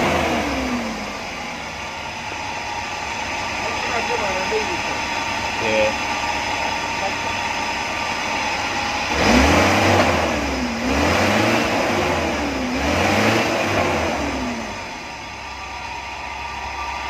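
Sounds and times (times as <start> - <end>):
engine running and revving: 0.0 - 17.0.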